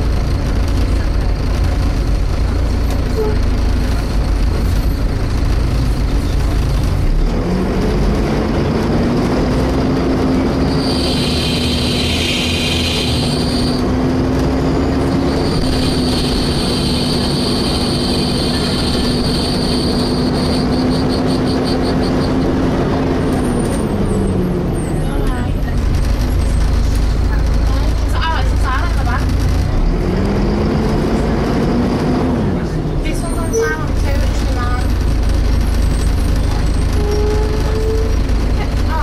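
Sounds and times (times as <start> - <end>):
bus engine and road rumble: 0.0 - 39.0
loud high-pitched screeching: 10.7 - 13.8, 15.4 - 22.4.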